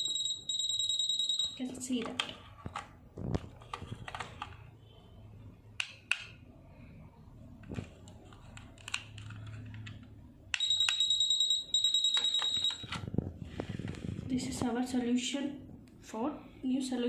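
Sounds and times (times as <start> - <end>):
pager high-pitched beeping: 0.0 - 1.6, 10.6 - 12.9.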